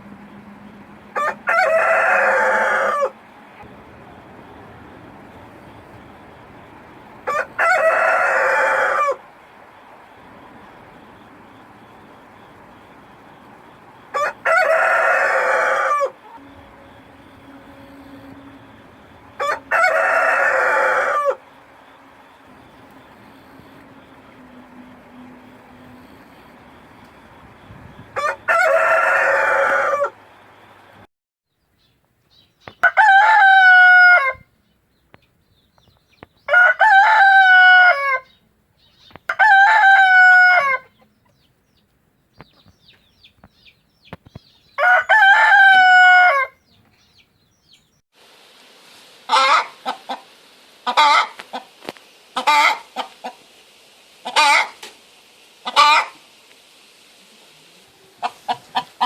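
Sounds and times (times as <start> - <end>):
rooster crowing: 1.1 - 3.2, 7.2 - 9.2, 14.1 - 26.1, 28.1 - 30.5, 32.8 - 34.5, 36.5 - 38.4, 39.3 - 41.0, 44.8 - 46.7, 49.3 - 50.2, 50.8 - 51.6, 52.4 - 53.1, 54.2 - 54.8, 55.6 - 56.2
background hiss: 47.0 - 59.0
chicken clucking: 49.3 - 51.8, 52.4 - 53.4, 54.2 - 54.9, 55.6 - 56.2, 58.0 - 59.0.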